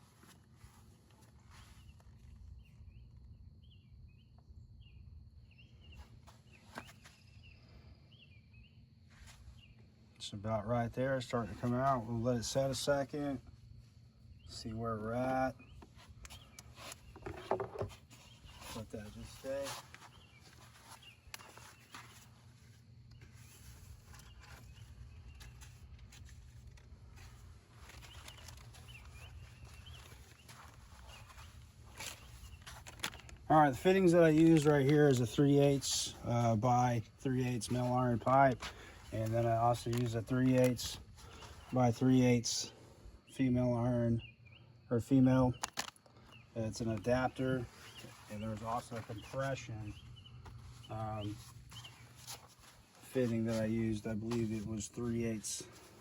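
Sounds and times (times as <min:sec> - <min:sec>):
faint bird chirps: 0:01.4 - 0:26.1, 0:27.2 - 0:33.7.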